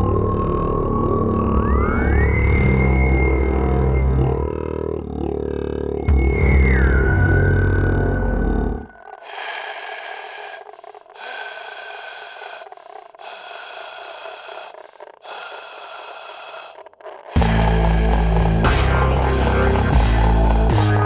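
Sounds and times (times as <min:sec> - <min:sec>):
background music: 0:17.4 - 0:21.0
thin filtered music phrases: 0:17.4 - 0:21.0.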